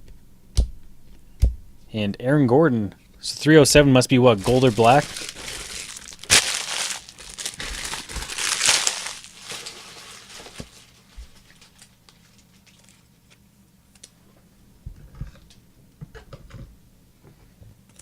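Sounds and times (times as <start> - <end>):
foil wrapper crinkling: 4.3 - 13.4.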